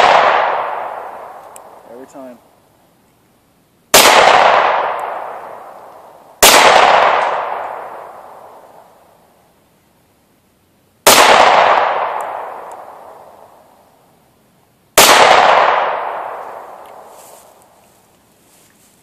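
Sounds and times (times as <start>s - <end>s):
pistol shots echoing: 0.0s - 1.8s, 3.9s - 8.8s, 11.0s - 13.4s, 15.0s - 17.1s.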